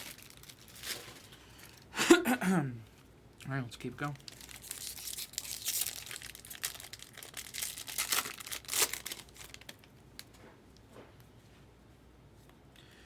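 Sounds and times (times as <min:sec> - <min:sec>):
foil wrapper crinkling: 0:00.0 - 0:01.8, 0:04.0 - 0:10.4.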